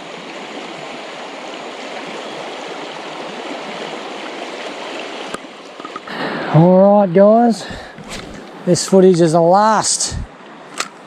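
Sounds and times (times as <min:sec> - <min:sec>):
river rushing over rocks: 0:00.0 - 0:06.8.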